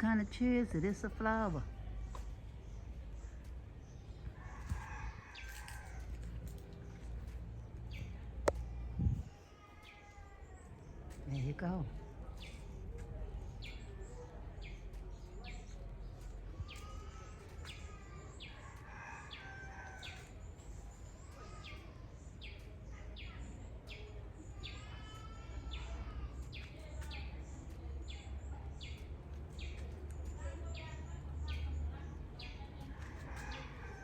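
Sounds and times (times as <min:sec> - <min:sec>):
steady low rumble: 0:06.2 - 0:09.4.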